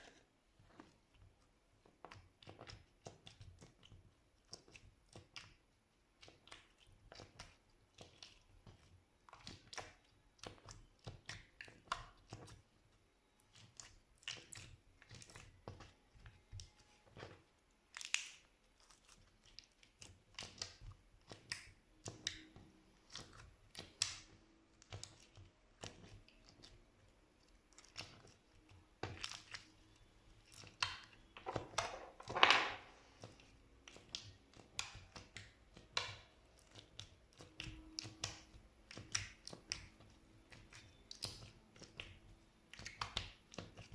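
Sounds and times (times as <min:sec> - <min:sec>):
slime sticky clicks and pops: 0:17.9 - 0:18.5, 0:20.3 - 0:26.7, 0:33.2 - 0:43.9.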